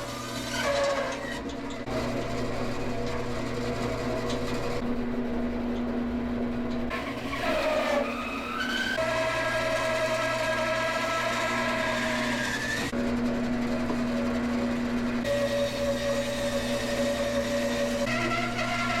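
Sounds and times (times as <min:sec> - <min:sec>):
bandsaw cutting wood: 0:06.9 - 0:13.0, 0:13.6 - 0:19.0.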